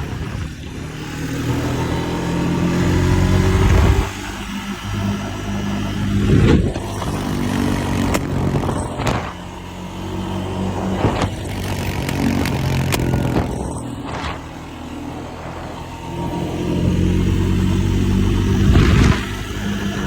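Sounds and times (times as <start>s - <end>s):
motorcycle engine running: 0.0s - 20.0s
exhaust pops and crackles: 6.4s - 9.4s, 10.8s - 14.6s, 18.5s - 20.0s.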